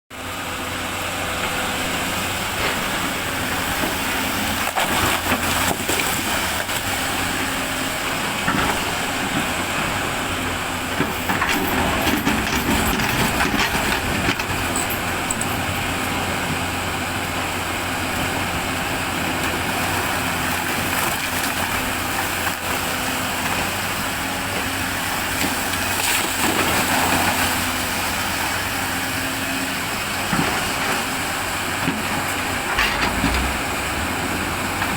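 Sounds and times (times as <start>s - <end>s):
excavator diesel engine running: 0.1s - 34.9s.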